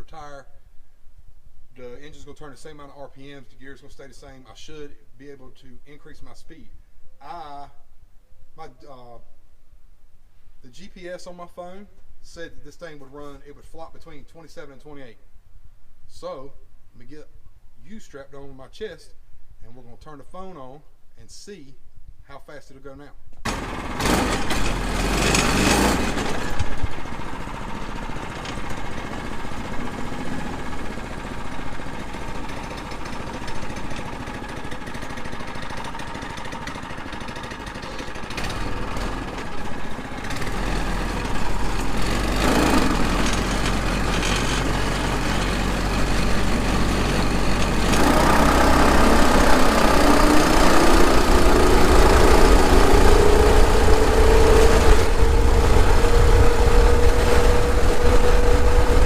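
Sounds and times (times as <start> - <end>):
go-kart engine idling and revving: 23.5 - 59.0.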